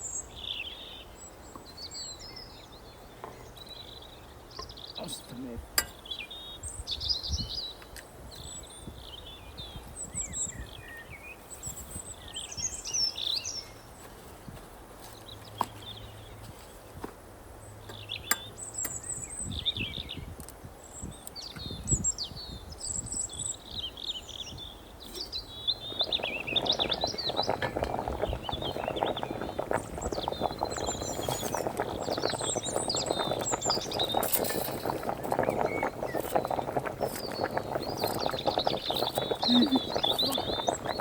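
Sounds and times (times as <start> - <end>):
small birds chirping and trilling: 0.0 - 41.0
patter of rapid small ticks: 25.1 - 41.0.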